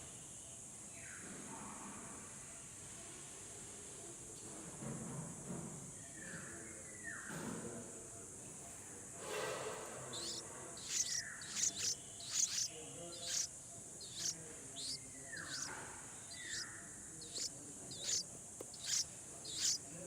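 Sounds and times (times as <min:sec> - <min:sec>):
baby bird chirping: 0:10.1 - 0:20.0.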